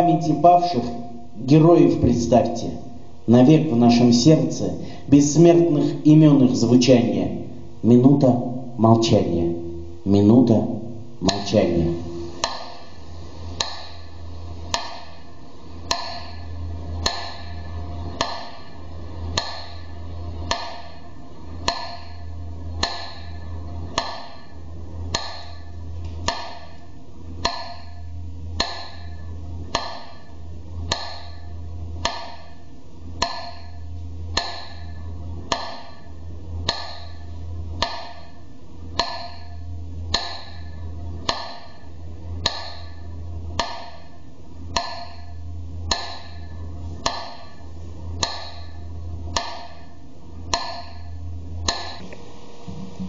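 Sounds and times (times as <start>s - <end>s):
low steady hum: 0.0s - 53.0s
metronome ticking: 11.2s - 12.8s, 13.6s - 14.0s, 21.6s - 22.1s, 25.1s - 25.6s, 27.4s - 28.0s, 28.6s - 29.1s, 29.7s - 30.2s, 30.9s - 31.4s, 33.2s - 33.7s, 34.4s - 34.9s, 36.6s - 37.1s, 39.0s - 39.5s, 44.7s - 45.2s, 45.9s - 46.4s, 48.2s - 48.6s, 51.6s - 52.1s.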